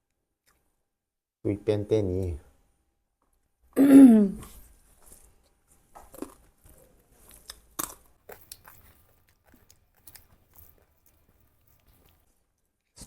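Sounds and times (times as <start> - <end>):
food being chewed: 0.4 - 0.8, 4.4 - 13.0.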